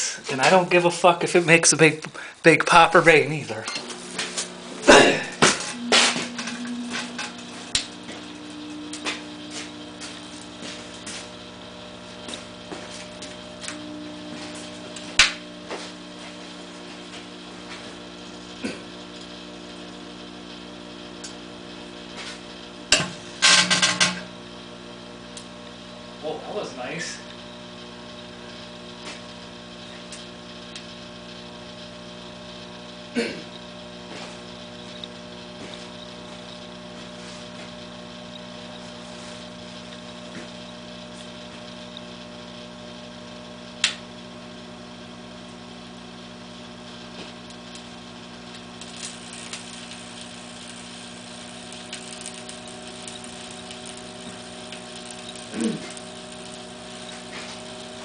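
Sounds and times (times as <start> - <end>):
microwave oven humming: 0.0 - 58.0
battery arcing cracks and snaps: 14.9 - 15.5, 47.1 - 58.0
fizzing crackle: 47.5 - 58.0.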